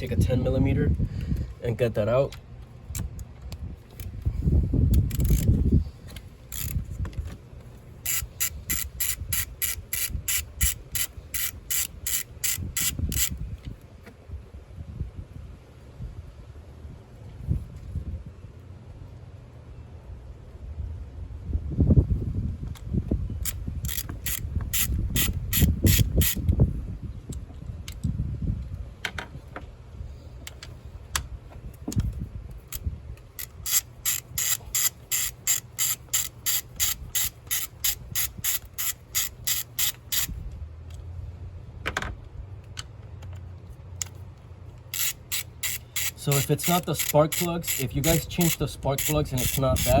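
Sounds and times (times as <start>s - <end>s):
socket ratchet clicking: 4.9s - 6.8s, 8.0s - 13.4s, 23.4s - 26.5s, 32.7s - 40.4s, 44.0s - 50.0s
handling clunks and rumbles: 41.8s - 44.9s.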